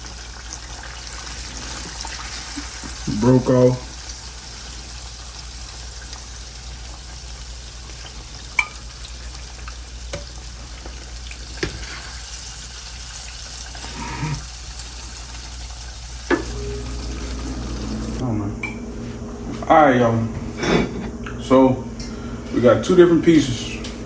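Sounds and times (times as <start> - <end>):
fish sizzling in grease: 0.0 - 18.2.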